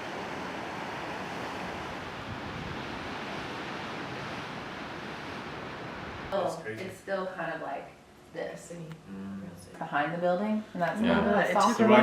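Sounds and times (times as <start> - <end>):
ocean surf breaking: 0.0 - 6.4
wind: 0.0 - 9.8.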